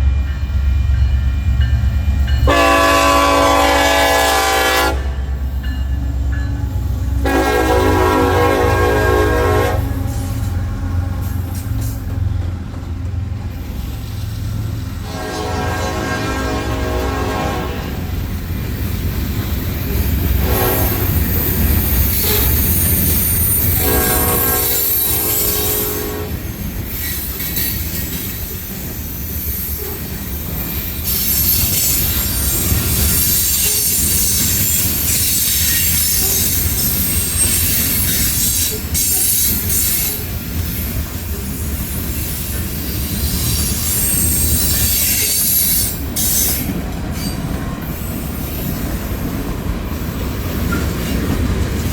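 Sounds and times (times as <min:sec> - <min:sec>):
train cars rumbling: 0:00.0 - 0:51.9
train air horn: 0:02.4 - 0:05.4, 0:07.0 - 0:12.4, 0:15.0 - 0:18.1, 0:20.4 - 0:21.2, 0:23.6 - 0:26.5
steel wheel squeal: 0:20.8 - 0:26.0, 0:26.8 - 0:49.3.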